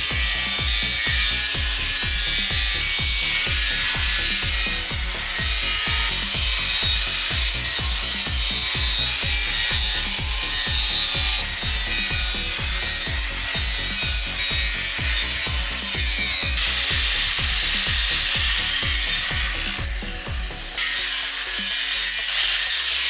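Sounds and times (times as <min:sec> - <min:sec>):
hand tool rasping: 0:00.0 - 0:23.0.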